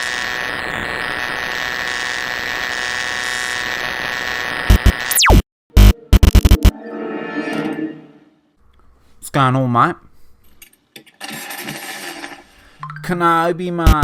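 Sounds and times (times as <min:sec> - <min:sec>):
loud static bursts: 0:00.0 - 0:06.7.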